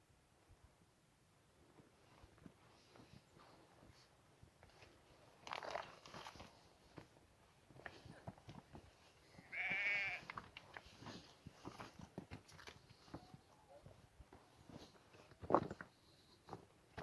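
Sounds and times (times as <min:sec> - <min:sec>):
goat or sheep bleat: 0:09.4 - 0:10.4.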